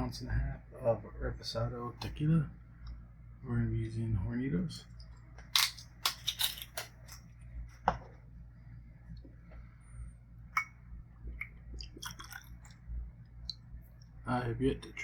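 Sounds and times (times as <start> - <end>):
liquid pouring: 11.4 - 12.8.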